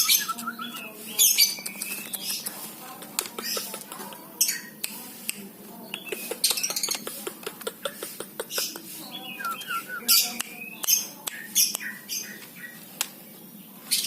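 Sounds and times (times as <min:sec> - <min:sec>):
bird chirping and squawking: 0:00.0 - 0:02.4, 0:07.8 - 0:12.8.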